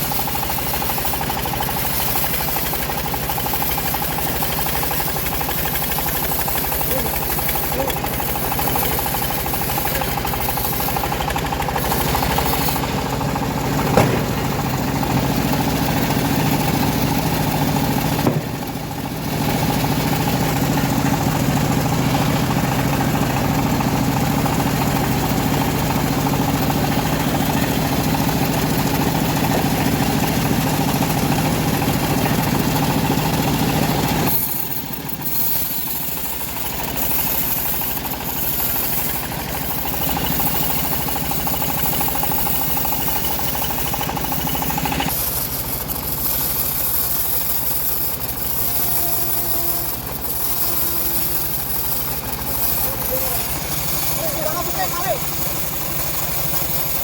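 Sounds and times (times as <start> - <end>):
blade sawing through log: 0.0 - 57.0
sawmill engine running: 0.0 - 57.0
sharp knock: 13.8 - 14.9, 18.2 - 18.7.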